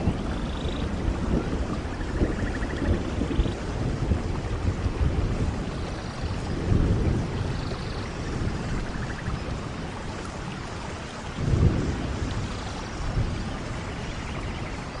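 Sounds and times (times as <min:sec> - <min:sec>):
steady rain: 0:00.0 - 0:15.0.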